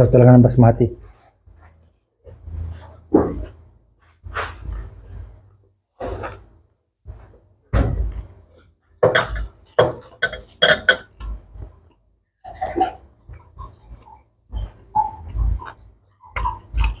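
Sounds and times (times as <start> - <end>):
biting and chewing food: 9.2 - 17.0.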